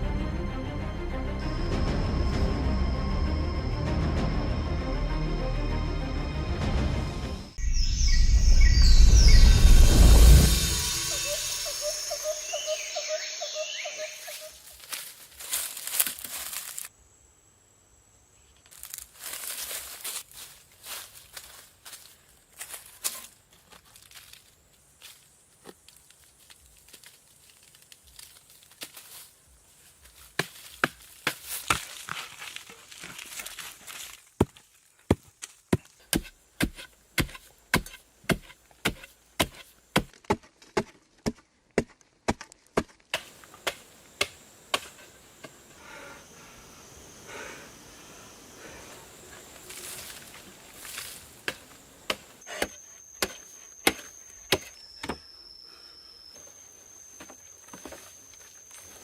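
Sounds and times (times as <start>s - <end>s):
wood being chopped: 30.4s - 32.2s, 34.4s - 45.0s, 51.4s - 55.2s.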